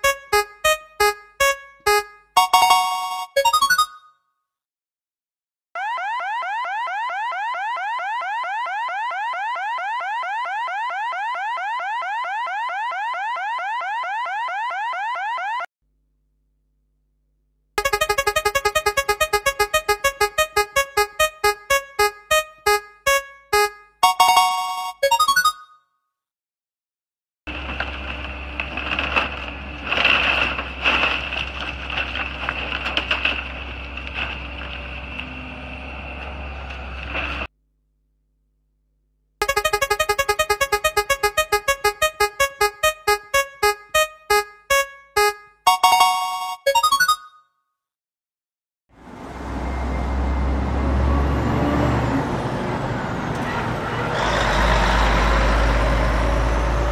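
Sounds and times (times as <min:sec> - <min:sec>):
electronic keyboard notes: 0:00.0 - 0:04.1, 0:17.8 - 0:25.7, 0:39.4 - 0:47.3.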